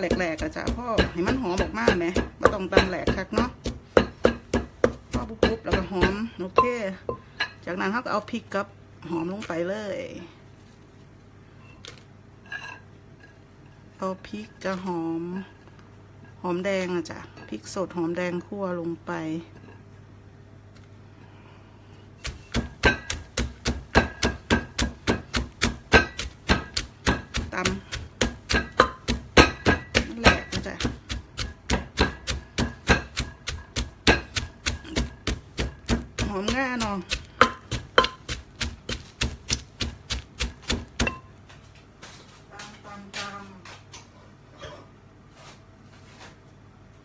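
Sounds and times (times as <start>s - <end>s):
pestle pounding in mortar: 0.0s - 7.2s, 22.2s - 41.3s.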